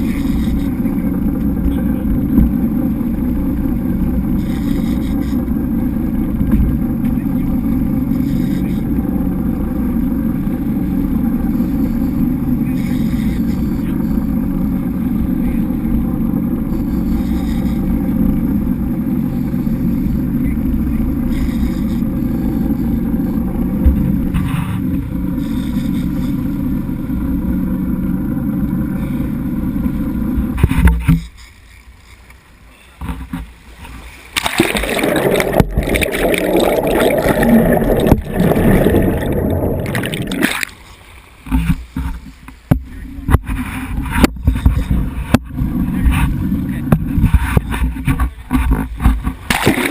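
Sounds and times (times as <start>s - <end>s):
boat engine droning: 0.0s - 49.9s
wind noise on microphone: 41.5s - 49.8s.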